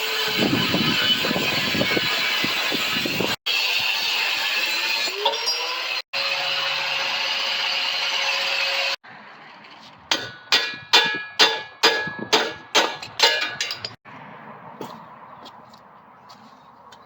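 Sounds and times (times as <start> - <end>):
angle grinder cutting steel: 0.0 - 9.0
ringing hammer blows on metal: 10.1 - 14.0.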